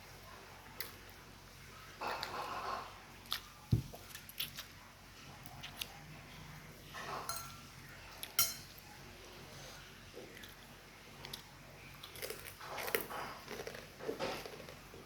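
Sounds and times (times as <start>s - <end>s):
utensils clinking against a plate: 7.0s - 8.8s.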